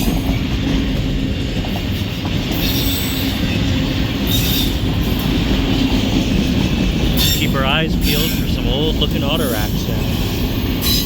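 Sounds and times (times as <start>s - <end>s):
steel wheels rumbling on rail: 0.0s - 11.0s.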